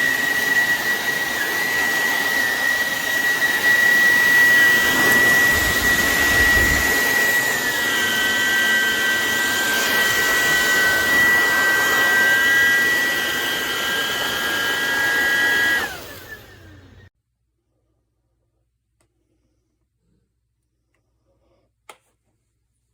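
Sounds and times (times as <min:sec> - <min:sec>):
vacuum cleaner motor whine: 0:00.0 - 0:17.1.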